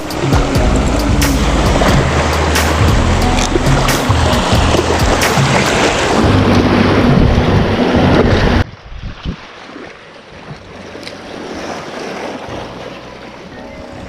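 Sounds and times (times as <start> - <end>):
low hum: 0.0 - 8.6
wind buffeting microphone: 0.0 - 12.9.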